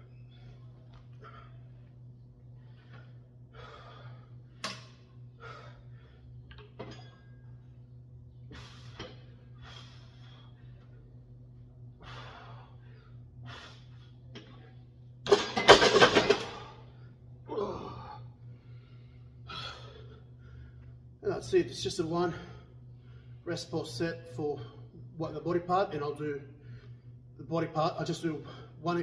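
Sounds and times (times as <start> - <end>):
low hum: 0.0 - 29.0
man breathing hard: 2.5 - 6.4, 8.5 - 10.9, 11.9 - 14.2, 16.6 - 21.0.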